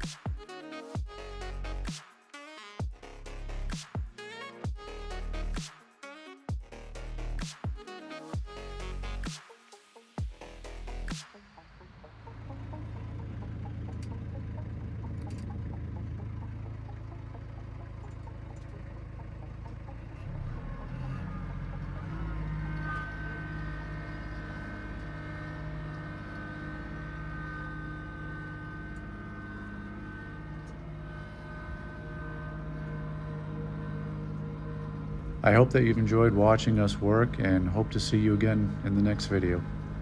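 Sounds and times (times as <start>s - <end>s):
tractor diesel engine running: 12.1s - 40.0s
thin high whine: 21.0s - 40.0s.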